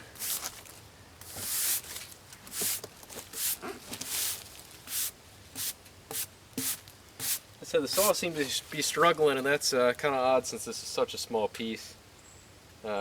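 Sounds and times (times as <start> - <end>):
brushing strokes on rough board: 0.1 - 0.6, 1.2 - 8.9.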